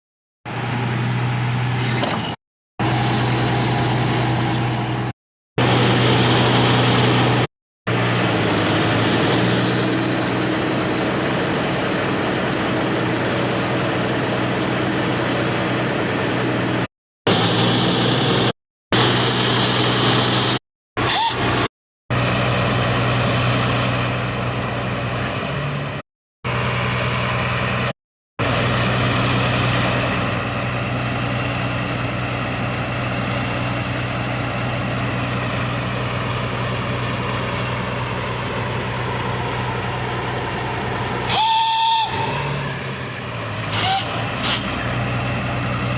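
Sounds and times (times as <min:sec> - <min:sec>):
horn-like tone: 0:41.3 - 0:42.9.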